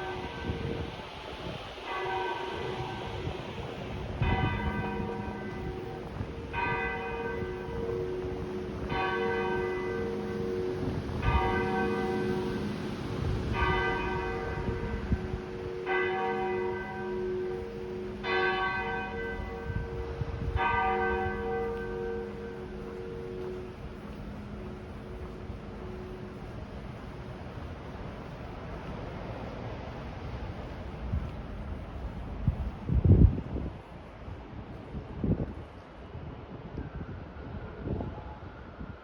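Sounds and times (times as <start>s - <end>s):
wind buffeting microphone: 0.0s - 39.0s
large bell tolling: 4.2s - 27.0s.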